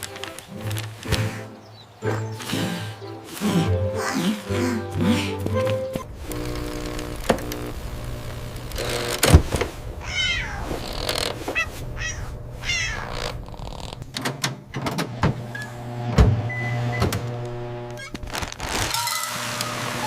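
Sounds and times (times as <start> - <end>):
kitten meowing: 10.0 - 10.7, 11.5 - 13.4.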